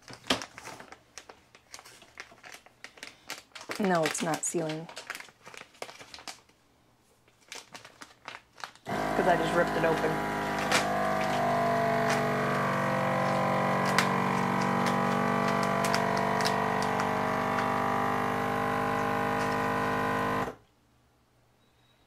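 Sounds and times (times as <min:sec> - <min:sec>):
plastic bag crinkles: 0:00.0 - 0:06.6, 0:07.2 - 0:18.2
vacuum sealer pump humming: 0:08.9 - 0:20.6.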